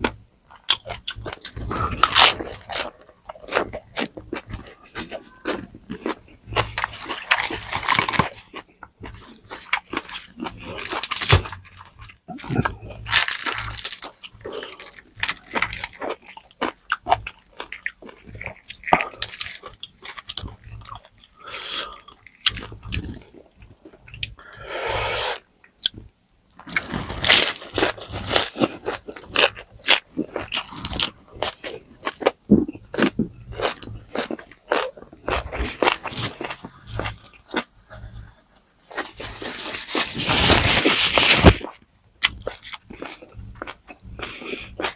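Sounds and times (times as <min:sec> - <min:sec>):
wet mouth sounds: 0:00.0 - 0:27.3
crunchy bites and chewing: 0:00.0 - 0:44.9.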